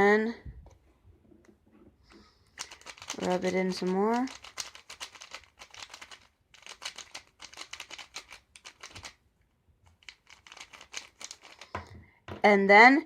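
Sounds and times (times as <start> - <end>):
puzzle cube clicking as turned: 2.6 - 9.2, 9.8 - 11.7.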